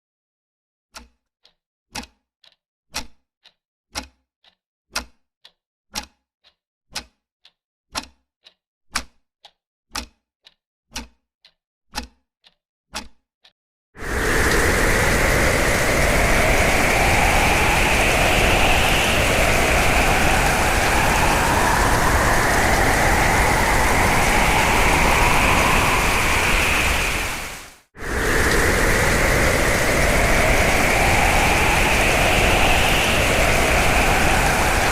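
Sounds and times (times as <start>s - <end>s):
clock ticking: 10.0s - 13.2s
hurricane wind howling: 14.0s - 34.9s.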